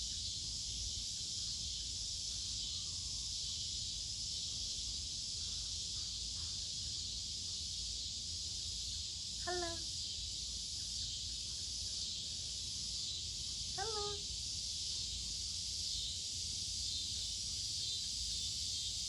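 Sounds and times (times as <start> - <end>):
high-pitched insect drone: 8.8 - 19.0.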